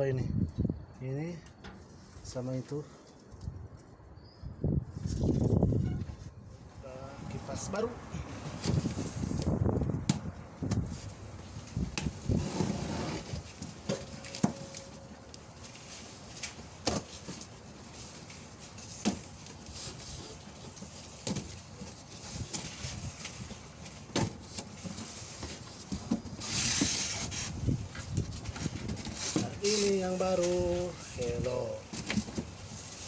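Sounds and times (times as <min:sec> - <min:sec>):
clicks and knocks handling fan parts: 0:13.5 - 0:17.6.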